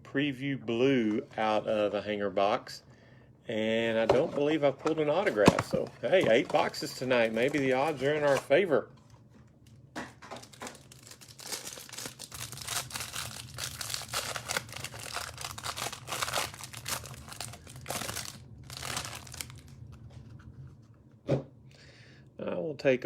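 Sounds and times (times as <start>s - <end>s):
packaging crinkling and tearing: 4.8s - 20.4s.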